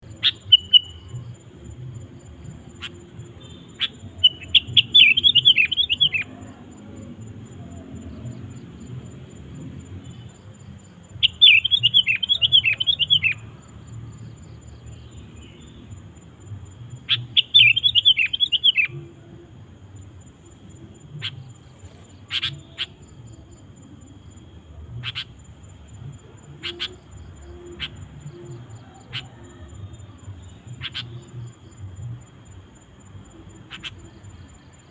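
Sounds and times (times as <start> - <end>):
bulbul singing: 0.0 - 34.9.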